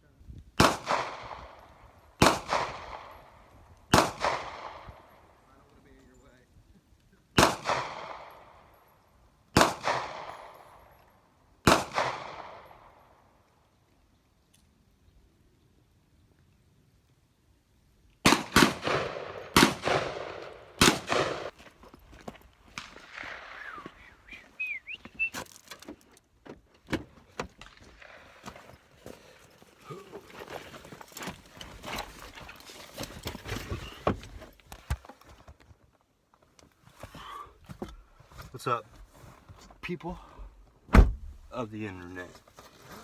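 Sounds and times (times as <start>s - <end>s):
gunshots with echo: 7.4s - 8.6s, 9.6s - 10.6s, 11.6s - 12.9s, 18.2s - 21.5s.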